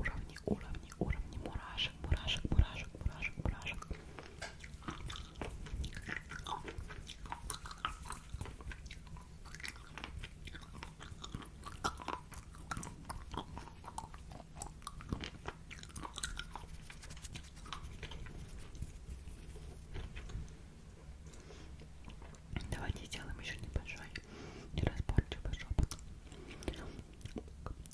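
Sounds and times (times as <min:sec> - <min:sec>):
wet mouth clicks and lip smacks: 0:00.0 - 0:18.6
low microphone hum: 0:00.0 - 0:27.8.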